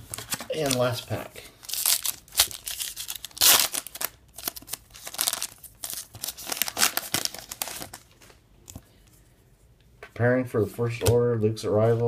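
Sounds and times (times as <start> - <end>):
wrapper tearing and crinkling: 1.6 - 8.1.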